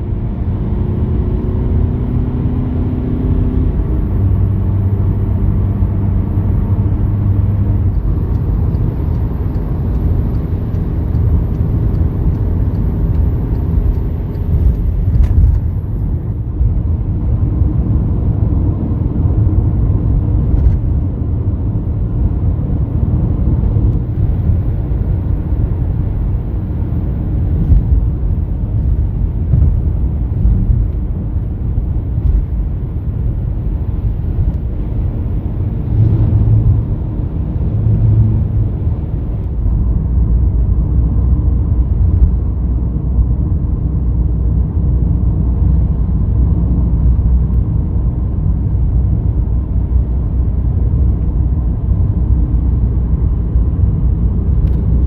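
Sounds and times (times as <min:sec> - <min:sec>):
pitched engine drone: 0:00.0 - 0:21.1, 0:22.2 - 0:42.4
vehicle engine and road noise: 0:00.0 - 0:55.0.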